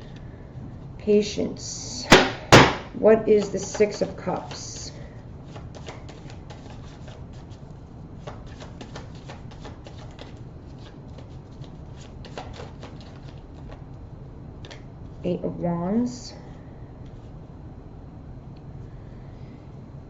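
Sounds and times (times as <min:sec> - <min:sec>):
cards being shuffled: 0:03.3 - 0:13.9.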